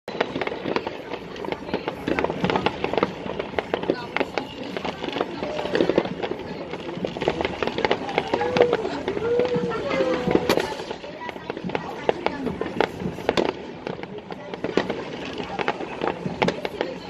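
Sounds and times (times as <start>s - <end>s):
fireworks crackling and banging: 0.1s - 17.0s.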